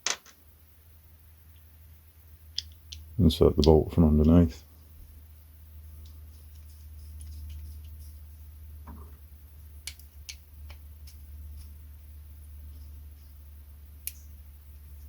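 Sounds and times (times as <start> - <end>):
steady low hum: 0.4 - 15.0
small bolt clicks and taps: 2.6 - 4.4, 9.8 - 11.2.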